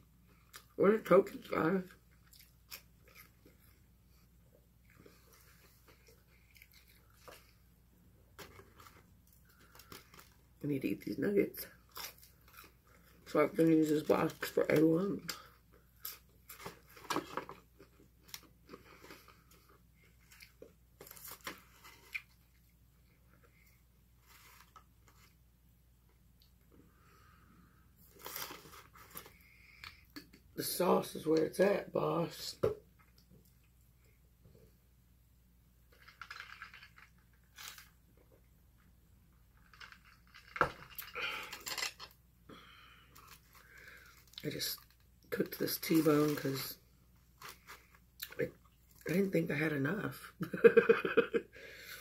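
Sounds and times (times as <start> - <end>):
person chewing food: 2.0 - 7.8
small clicks and rustles: 35.8 - 42.2.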